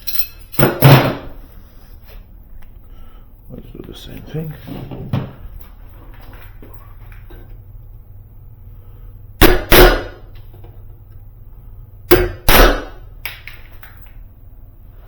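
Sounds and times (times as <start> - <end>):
hammer blows on metal door: 9.4 - 10.2.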